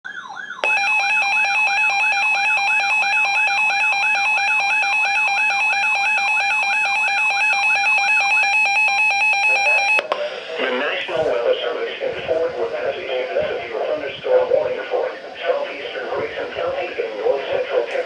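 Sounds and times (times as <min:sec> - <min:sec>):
warbling alarm: 0:00.0 - 0:10.0
steady alert tone: 0:00.6 - 0:10.0.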